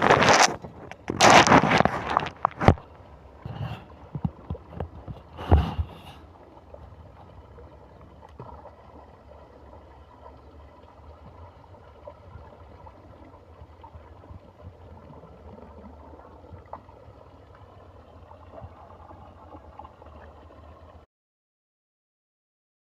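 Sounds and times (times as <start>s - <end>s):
fish splashing at surface: 0.0s - 2.9s
water gurgling: 0.0s - 21.1s.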